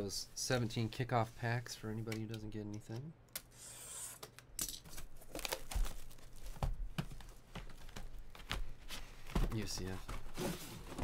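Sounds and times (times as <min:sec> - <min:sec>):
plastic packaging crinkling and tearing: 0:04.9 - 0:06.6.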